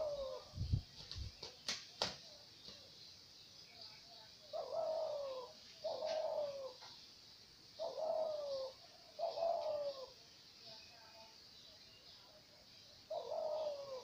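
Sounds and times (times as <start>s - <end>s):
dove cooing: 0.0s - 0.5s, 4.5s - 6.9s, 7.8s - 10.2s, 13.1s - 14.0s.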